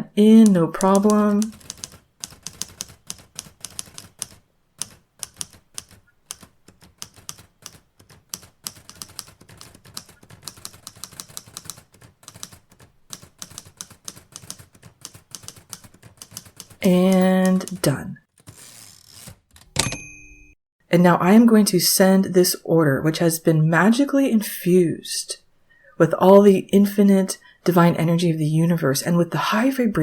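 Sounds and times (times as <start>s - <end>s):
typewriter keys clacking: 0.4s - 20.0s.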